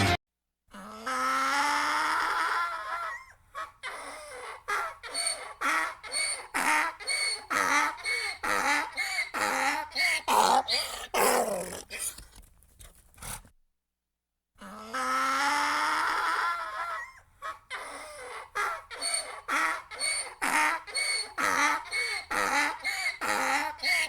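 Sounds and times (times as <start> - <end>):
donkey braying: 3.6 - 12.2, 15.0 - 24.0.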